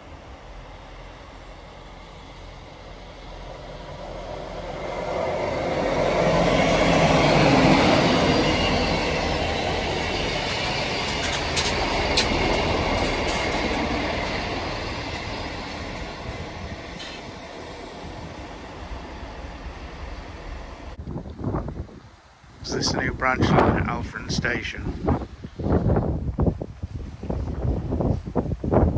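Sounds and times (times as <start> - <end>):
diesel train running past: 0.0 - 21.0
high wheel squeaks: 6.2 - 20.9.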